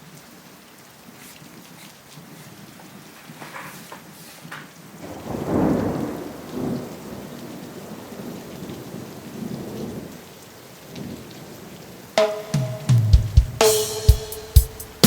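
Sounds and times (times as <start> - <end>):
steady rain: 0.0 - 15.0
thunder rumbling: 5.0 - 10.1.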